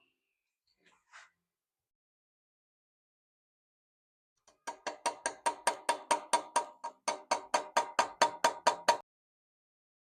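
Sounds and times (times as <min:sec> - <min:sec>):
hammer tapping a metal chisel: 0:04.4 - 0:09.1.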